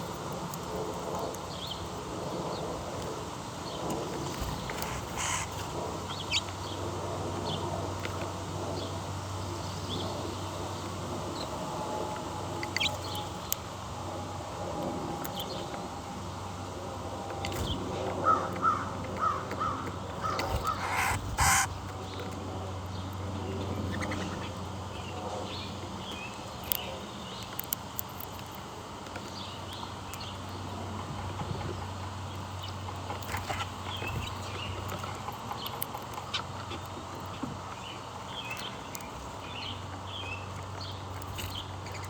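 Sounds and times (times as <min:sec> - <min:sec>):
steady low hum: 0:00.0 - 0:25.8
crow cawing: 0:04.8 - 0:05.6, 0:18.3 - 0:21.7.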